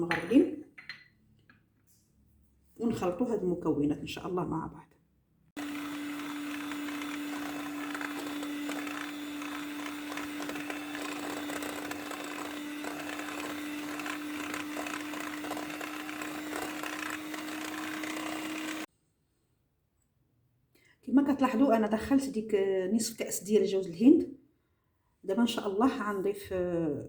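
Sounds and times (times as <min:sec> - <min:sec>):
electric mixer motor hum: 0:05.6 - 0:18.9.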